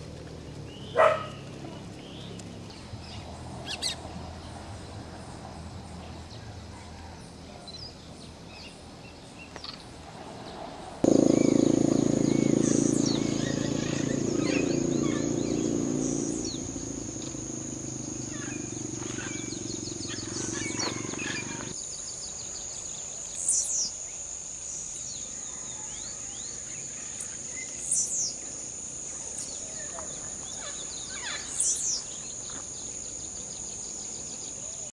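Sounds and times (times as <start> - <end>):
howler monkeys roaring: 11.0 - 21.8
high insect drone: 11.0 - 34.9.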